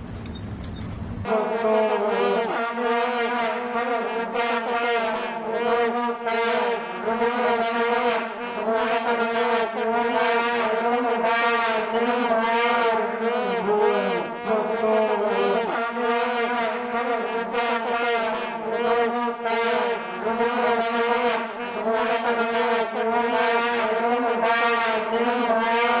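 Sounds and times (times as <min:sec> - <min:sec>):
vuvuzelas droning: 0:01.1 - 0:26.0.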